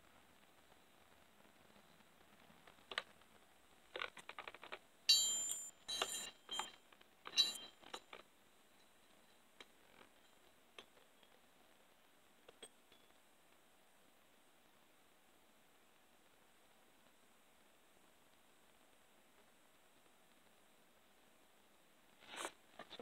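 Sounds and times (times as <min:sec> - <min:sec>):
saw chain parts clinking: 0:05.1 - 0:07.9
metal-on-metal clinks: 0:05.1 - 0:08.2.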